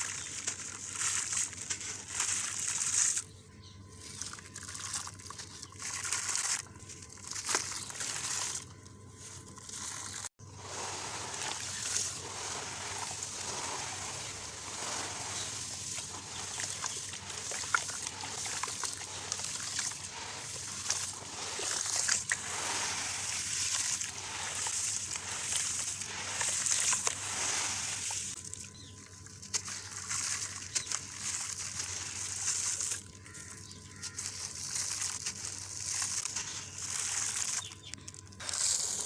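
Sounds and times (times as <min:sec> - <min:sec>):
water sloshing and trickling: 0:09.5 - 0:33.5
concrete stones crumbling in water: 0:11.0 - 0:28.4.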